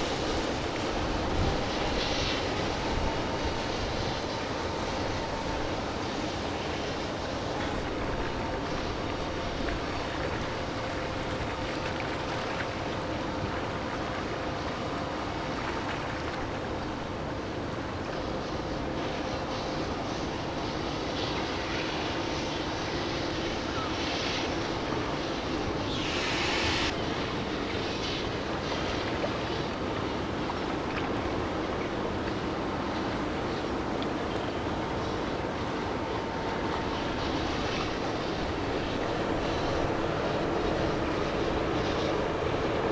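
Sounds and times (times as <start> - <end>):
vehicle engine drone: 25.4 - 27.0
brief hiss: 25.5 - 27.2.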